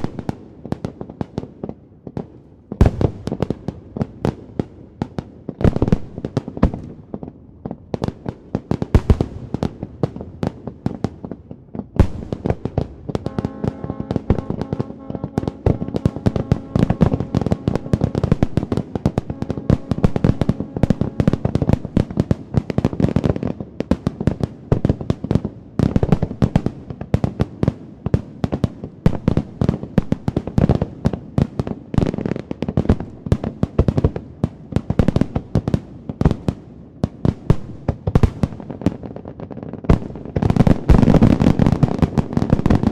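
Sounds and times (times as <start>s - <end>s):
fireworks crackling and popping: 0.0s - 42.9s.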